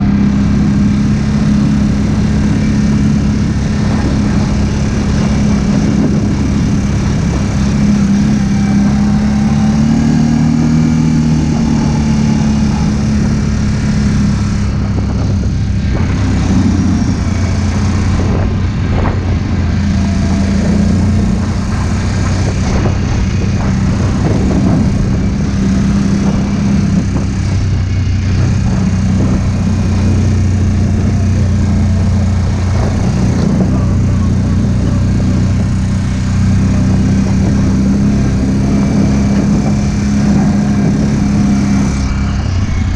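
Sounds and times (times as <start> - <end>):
atv engine droning: 0.0 - 42.9.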